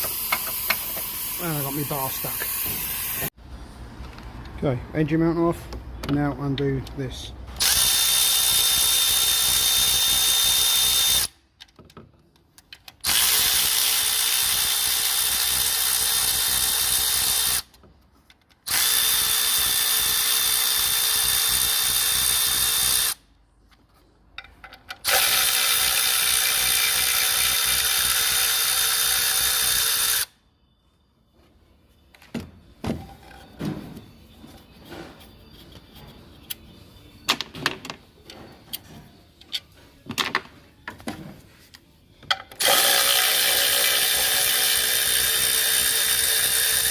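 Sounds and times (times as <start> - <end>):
tools clicking and knocking: 0.0 - 1.2, 11.6 - 13.1, 23.7 - 25.3, 42.2 - 42.9
power tool undoing fasteners: 25.0 - 30.3, 42.6 - 46.9.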